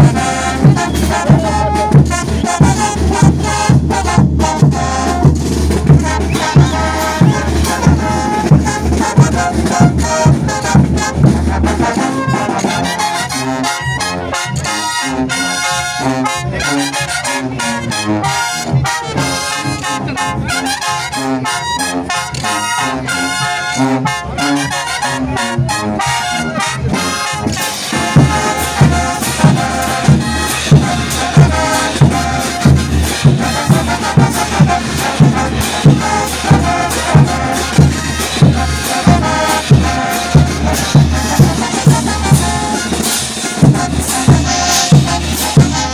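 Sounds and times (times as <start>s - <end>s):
bass drum beat: 0.0s - 12.1s, 27.4s - 45.9s
trumpets and trombones: 0.0s - 45.9s.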